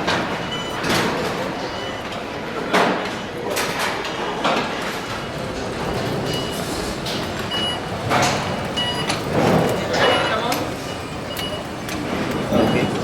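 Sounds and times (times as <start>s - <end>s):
hall background noise: 0.0s - 13.0s
faint high beeps: 10.0s - 11.7s, 12.6s - 13.0s.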